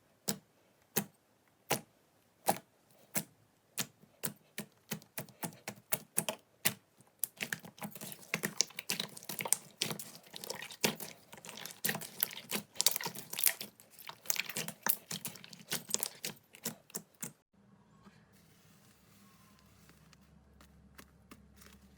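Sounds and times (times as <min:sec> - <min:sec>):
slime clicking and crackling: 0:01.7 - 0:17.4.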